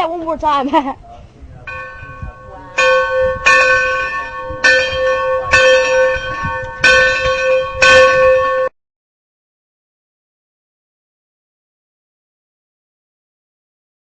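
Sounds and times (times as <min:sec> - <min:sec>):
locomotive bell ringing: 0:01.7 - 0:08.7.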